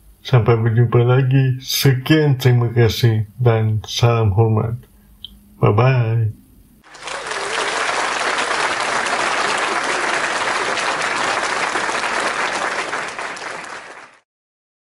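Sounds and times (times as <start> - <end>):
crowd applauding: 6.9 - 14.2.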